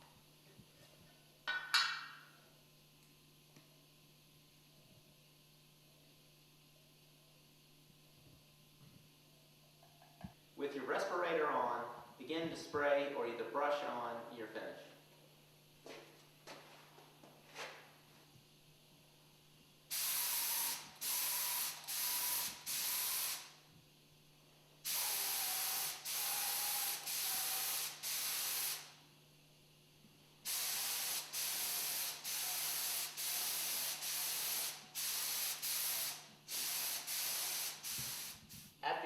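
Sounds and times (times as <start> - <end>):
spray gun hissing: 19.9 - 23.5, 24.9 - 28.9, 30.5 - 38.6.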